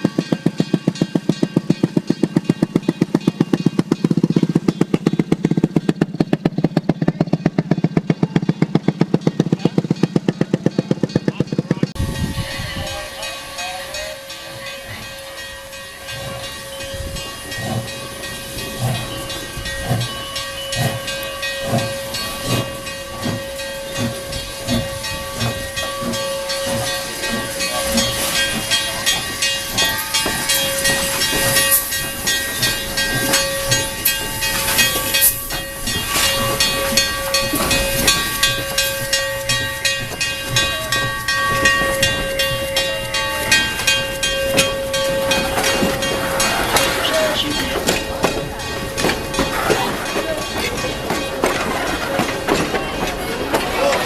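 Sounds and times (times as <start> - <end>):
locomotive exhaust chuffing: 0.0 - 54.0
steam hissing: 12.2 - 54.0.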